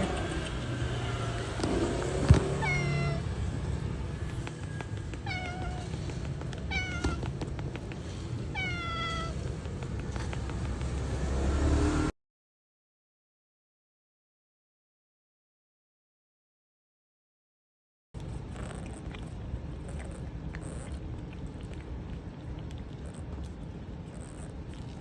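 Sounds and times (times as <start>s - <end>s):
low steady rumble: 0.0s - 11.6s, 18.2s - 25.0s
cat meowing: 2.0s - 7.6s, 8.4s - 10.6s.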